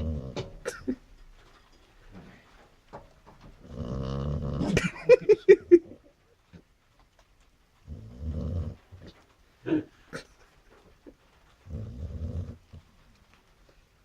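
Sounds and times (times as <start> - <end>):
dog snoring: 0.0 - 0.4, 3.6 - 4.8, 7.9 - 9.1, 11.6 - 12.8.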